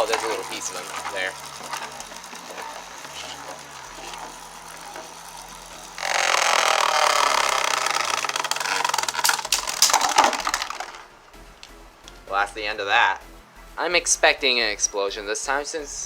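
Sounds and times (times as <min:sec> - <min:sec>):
spinning tops clashing: 0:00.0 - 0:11.3
spinning tops whirring and scraping: 0:00.0 - 0:13.0.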